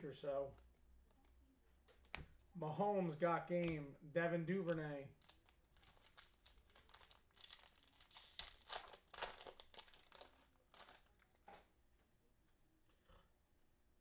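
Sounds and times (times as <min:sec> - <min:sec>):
cellophane crinkling and tearing: 0:05.2 - 0:11.7.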